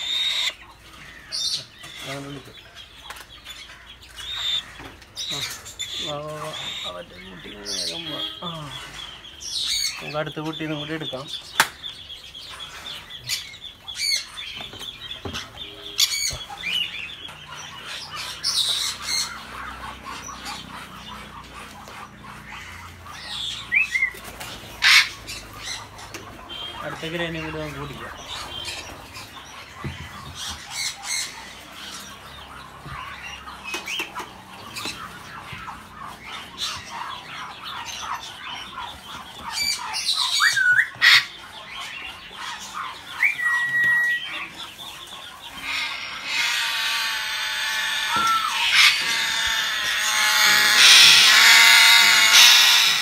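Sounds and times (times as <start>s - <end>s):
parrots squawking: 0.0s - 53.0s
parrot whistled calls: 40.3s - 41.1s, 43.2s - 44.4s, 45.6s - 53.0s.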